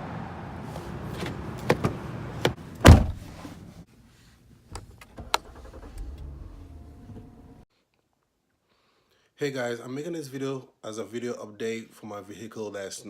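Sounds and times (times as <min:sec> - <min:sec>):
outside background noise: 0:00.0 - 0:08.8
car door shutting: 0:00.7 - 0:03.5, 0:04.8 - 0:07.6.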